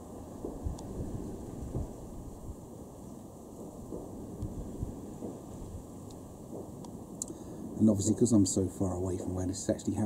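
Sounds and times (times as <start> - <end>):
distant fireworks thuds: 0.0 - 2.1, 3.4 - 8.0.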